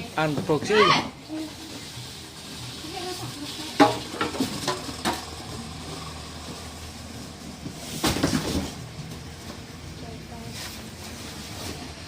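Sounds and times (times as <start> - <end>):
sharp knocks and clatters: 3.8 - 5.6.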